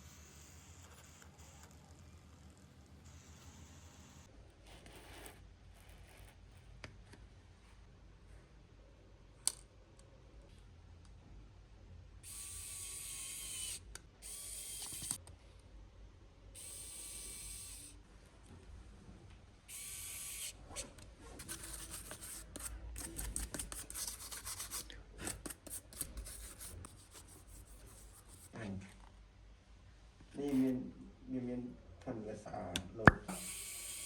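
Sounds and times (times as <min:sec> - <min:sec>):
scratchy rubbing and scraping: 0:20.7 - 0:28.6.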